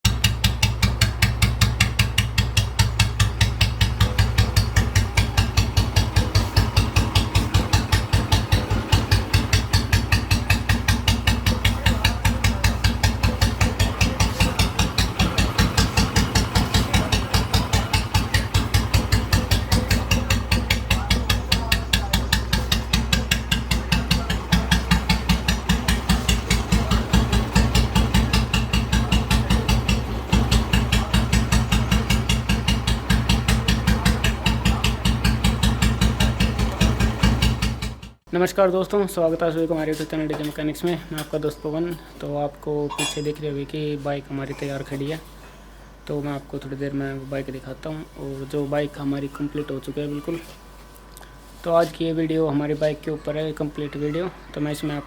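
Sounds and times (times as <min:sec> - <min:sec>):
motorcycle engine idling: 0:00.0 - 0:38.3.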